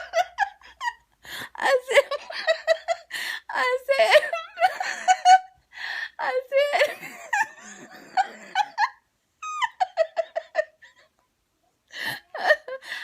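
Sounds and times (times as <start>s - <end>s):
woman laughing: 0.0s - 3.1s, 3.9s - 5.6s, 6.5s - 11.2s.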